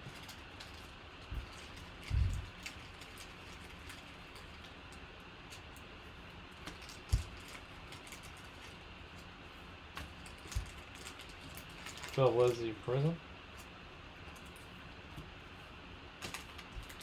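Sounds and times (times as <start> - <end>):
trading cards clicking and rustling: 0.0 - 5.9, 6.5 - 8.8, 10.0 - 12.8, 16.2 - 17.0.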